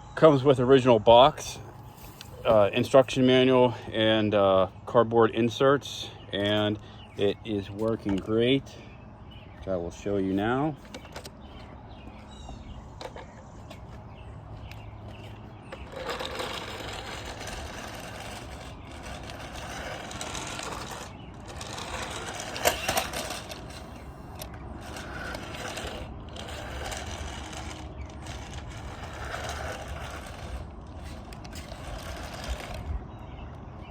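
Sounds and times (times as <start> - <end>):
toy vehicle motor whirring: 10.0 - 33.3
sharp clatter: 14.6 - 33.0.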